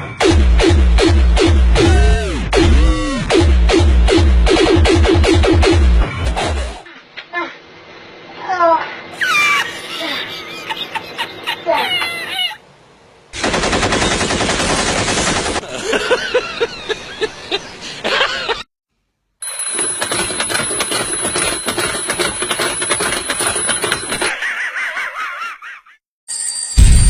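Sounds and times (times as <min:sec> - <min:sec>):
alarm bell rattling ring: 0:19.4 - 0:24.3.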